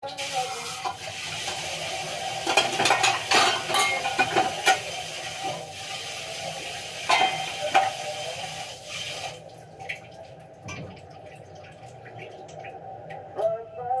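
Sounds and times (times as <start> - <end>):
dishes and cutlery clinking: 2.4 - 5.6, 7.1 - 8.1.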